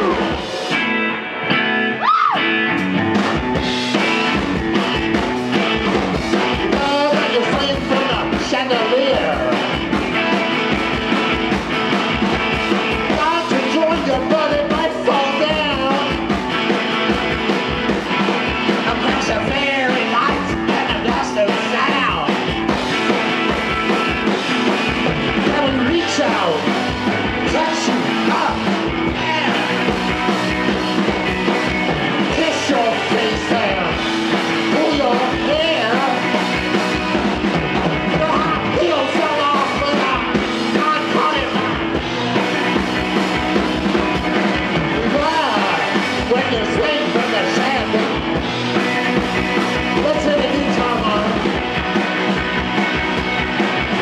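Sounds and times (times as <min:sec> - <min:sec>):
driving drum beat: 0:00.0 - 0:01.0, 0:02.3 - 0:54.0
live rock band: 0:00.0 - 0:54.0.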